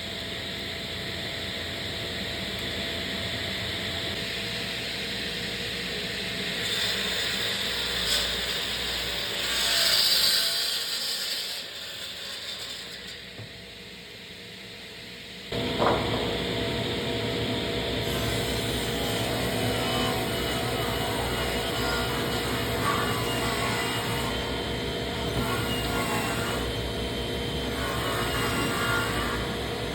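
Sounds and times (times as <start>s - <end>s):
power saw cutting wood: 6.5s - 13.4s, 18.0s - 26.8s, 27.6s - 29.9s.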